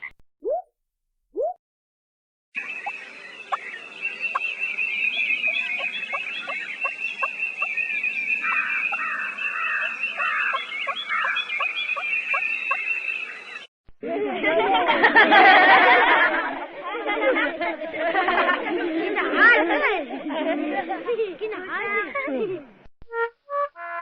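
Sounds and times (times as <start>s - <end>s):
rough calls: 2.6s - 13.6s.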